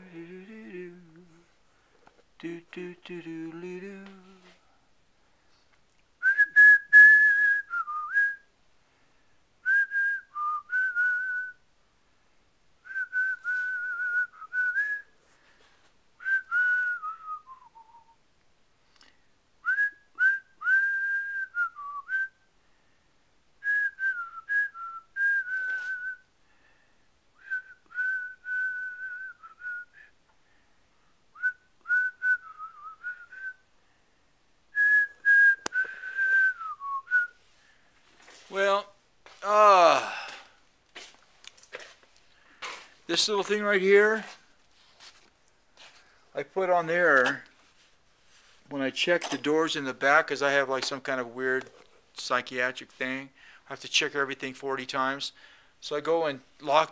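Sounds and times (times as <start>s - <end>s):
person whistling a tune: 6.2s - 8.5s, 9.6s - 11.6s, 12.9s - 15.1s, 16.2s - 18.2s, 19.6s - 22.4s, 23.6s - 26.3s, 27.4s - 30.2s, 31.3s - 33.6s, 34.8s - 37.4s.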